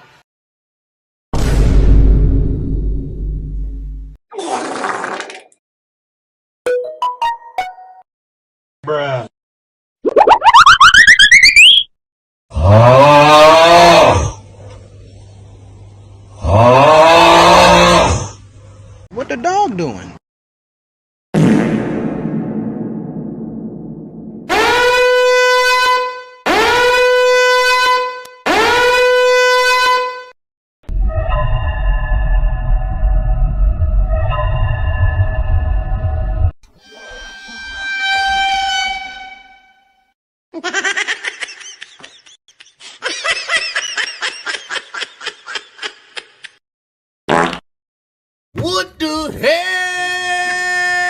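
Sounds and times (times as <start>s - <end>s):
boom: 1.4s - 4.1s, 21.4s - 24.5s
swooping horn blasts: 24.5s - 30.3s, 36.8s - 39.9s.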